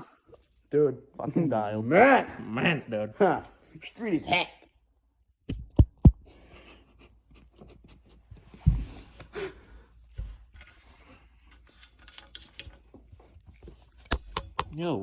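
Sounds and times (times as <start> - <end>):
metal clicks and knocks: 14.0 - 14.9.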